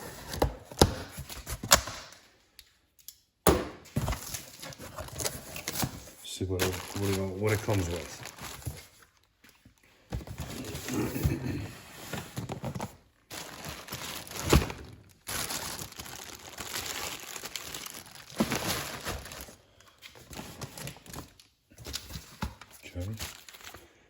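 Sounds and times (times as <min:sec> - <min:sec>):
packaging rustling and crinkling: 0:03.9 - 0:24.0.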